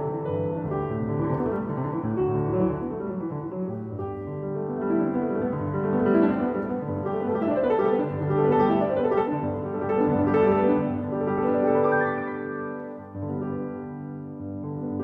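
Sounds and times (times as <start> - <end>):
piano music: 0.0 - 15.0.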